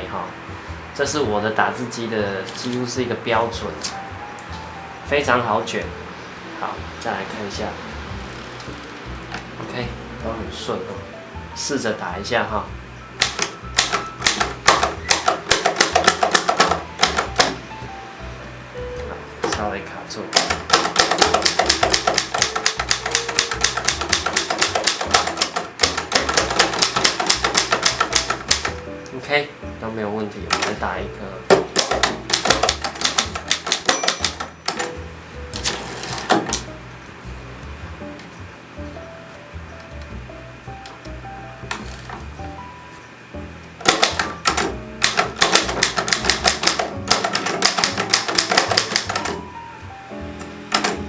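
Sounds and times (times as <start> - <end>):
typewriter keys striking: 13.2 - 17.7, 20.3 - 28.8, 30.5 - 30.8, 31.5 - 35.0, 35.6 - 36.7, 43.8 - 49.5, 50.7 - 51.0.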